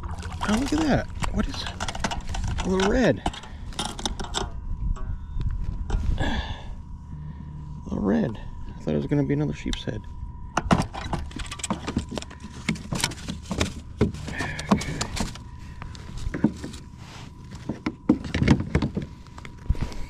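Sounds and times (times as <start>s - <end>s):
fishing gear knocks and rattles: 0.0s - 6.0s, 10.6s - 15.5s
faint steady tone: 0.0s - 13.3s.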